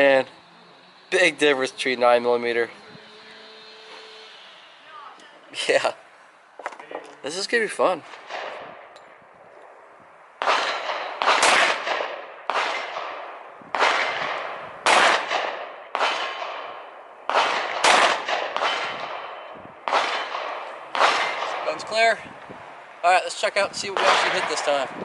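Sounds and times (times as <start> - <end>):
pistol shots with echo: 8.1 - 8.9, 10.4 - 21.7, 24.0 - 24.7.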